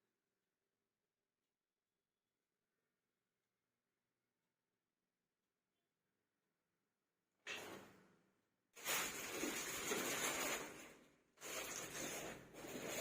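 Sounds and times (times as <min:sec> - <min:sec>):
rustling and scraping: 0:08.8 - 0:13.0.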